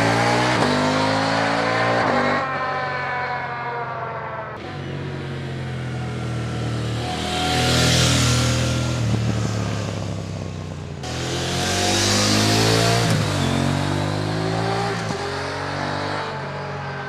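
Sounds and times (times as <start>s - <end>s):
tyre road noise: 0.0s - 17.0s
rushing wind: 4.8s - 15.7s.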